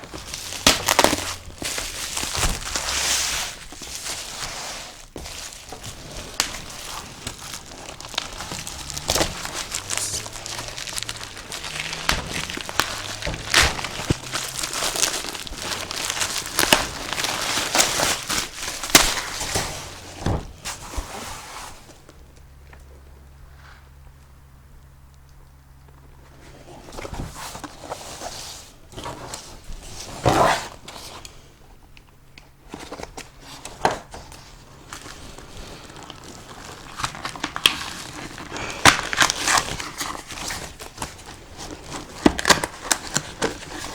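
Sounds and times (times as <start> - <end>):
packing material crinkling: 0.0 - 22.2, 32.6 - 43.9.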